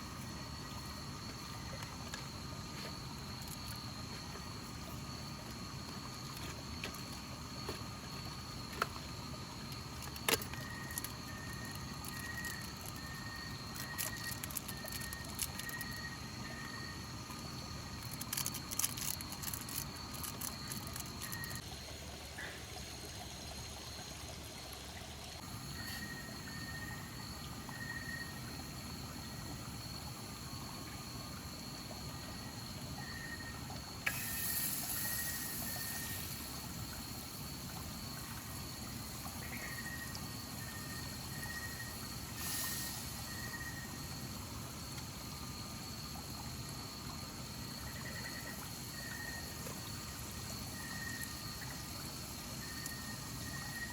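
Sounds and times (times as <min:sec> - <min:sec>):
running water: 0:00.0 - 0:53.9
high-pitched insect drone: 0:10.1 - 0:21.6, 0:33.0 - 0:36.4.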